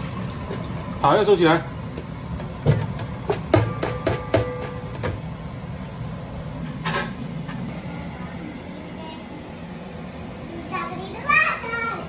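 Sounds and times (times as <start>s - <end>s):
kitchenware knocking and clinking: 2.6s - 5.2s.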